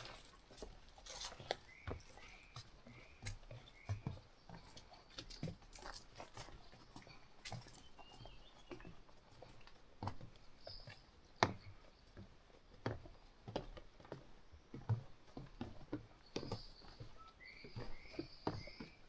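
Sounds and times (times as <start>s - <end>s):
footsteps crunching on trail: 0.0s - 11.0s, 16.3s - 19.0s.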